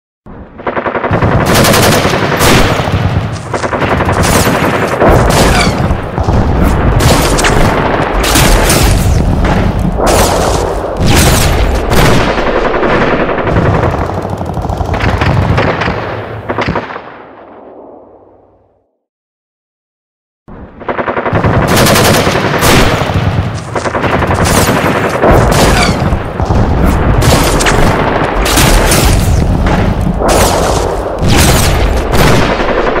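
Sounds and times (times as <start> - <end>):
machine-gun fire: 0.6 - 17.2, 20.9 - 33.0
booming blasts: 1.1 - 17.8, 21.3 - 33.0
single gunshots: 1.6 - 12.5, 21.8 - 33.0.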